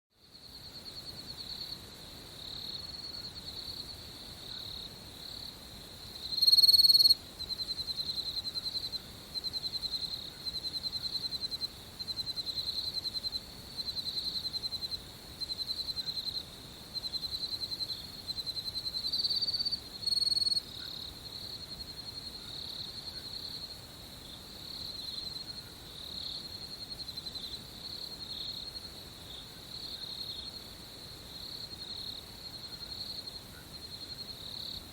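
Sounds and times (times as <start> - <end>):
crickets chirping chorus: 0.2 - 34.9
nearby cricket trilling: 0.3 - 23.8.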